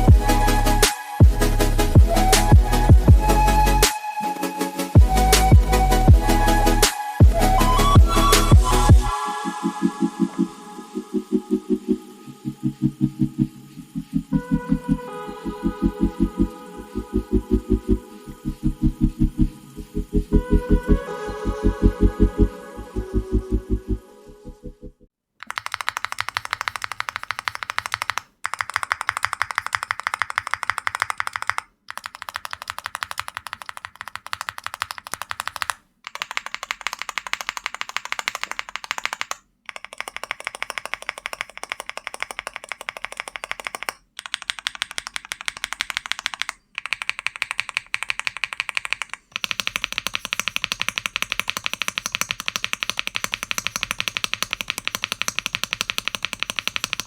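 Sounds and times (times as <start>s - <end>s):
fast typing on keyboard: 25.4s - 57.0s.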